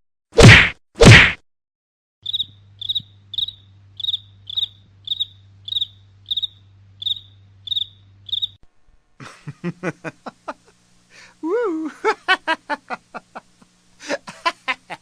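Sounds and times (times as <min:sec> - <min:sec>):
cricket chirping: 0:02.2 - 0:08.6
faint low hum: 0:02.2 - 0:15.0.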